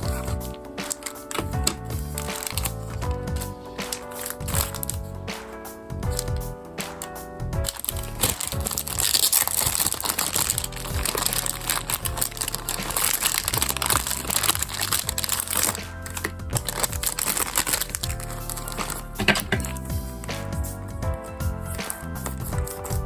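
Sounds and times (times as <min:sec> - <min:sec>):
plastic packaging crinkling: 0:00.0 - 0:05.0, 0:07.6 - 0:20.0
background music: 0:00.0 - 0:23.0.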